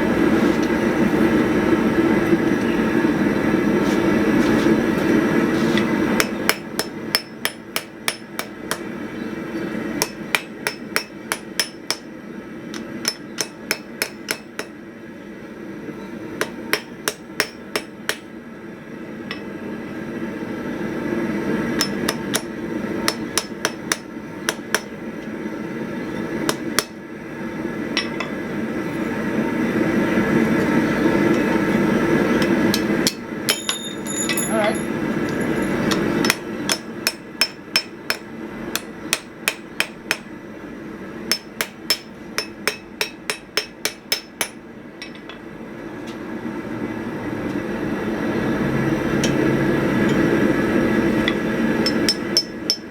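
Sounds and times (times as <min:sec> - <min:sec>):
hammer striking steel on anvil: 0:06.2 - 0:08.9, 0:10.0 - 0:12.1, 0:12.7 - 0:14.8, 0:16.4 - 0:18.3, 0:21.8 - 0:25.0, 0:28.0 - 0:28.4, 0:32.4 - 0:40.3, 0:41.3 - 0:45.4, 0:51.2 - 0:52.9
anvil ringing: 0:33.5 - 0:38.2.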